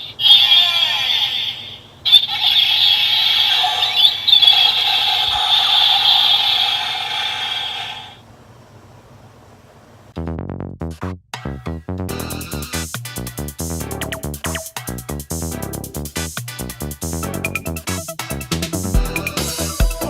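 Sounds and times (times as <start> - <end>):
screeching electronic toy effect: 0.2 - 8.2.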